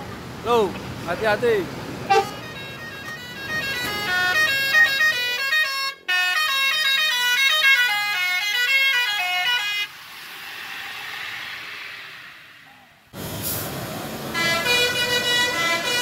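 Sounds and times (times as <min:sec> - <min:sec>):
musical air horns playing a tune: 0:02.1 - 0:10.0, 0:14.3 - 0:16.0
rushing noise: 0:09.0 - 0:15.2.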